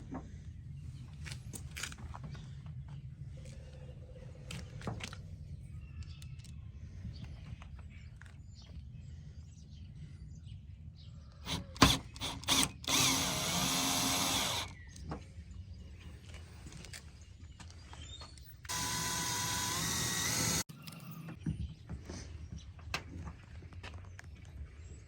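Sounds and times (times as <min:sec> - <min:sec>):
power drill running: 0:11.4 - 0:14.8, 0:18.7 - 0:21.3.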